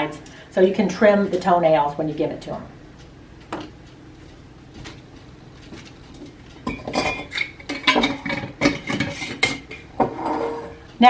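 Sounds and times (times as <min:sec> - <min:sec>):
kitchenware clinking and clattering: 0:05.6 - 0:10.9.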